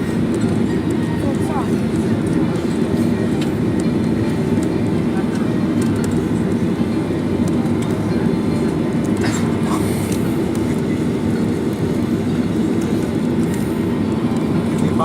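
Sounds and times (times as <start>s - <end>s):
airliner cabin rumble: 0.0s - 15.0s.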